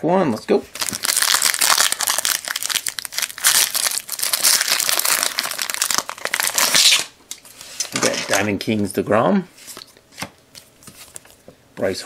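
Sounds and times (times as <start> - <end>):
plastic wrapper crinkling: 0.7 - 7.1.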